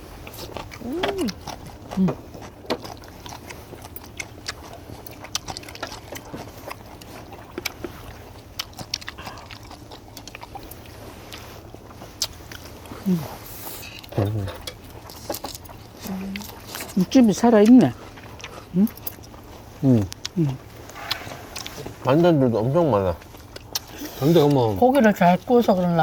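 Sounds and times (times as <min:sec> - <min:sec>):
wet chewing: 0:00.0 - 0:26.0
person humming: 0:00.8 - 0:01.4.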